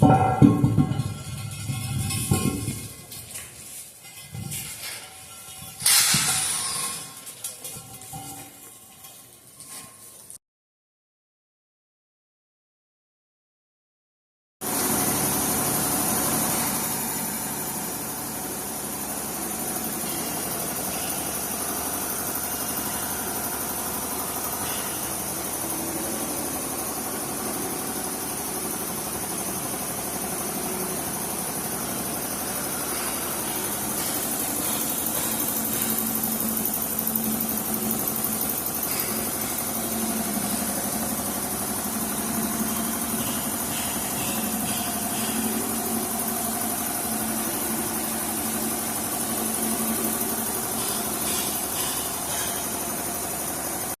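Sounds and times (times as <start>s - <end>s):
truck engine idling: 15.3s - 54.0s.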